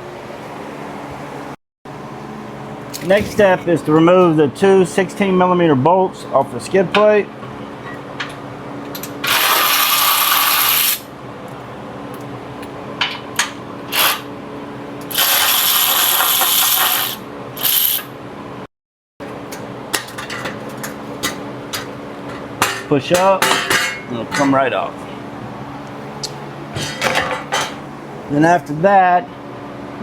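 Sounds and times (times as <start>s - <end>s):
power tool running: 15.1s - 18.0s.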